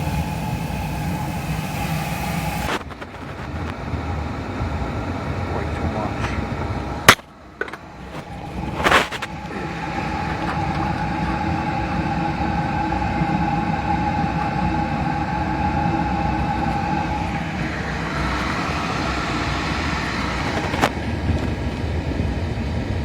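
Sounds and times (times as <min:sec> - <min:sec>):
oil burner rumbling: 0:00.0 - 0:23.0
steady hum: 0:00.0 - 0:23.0.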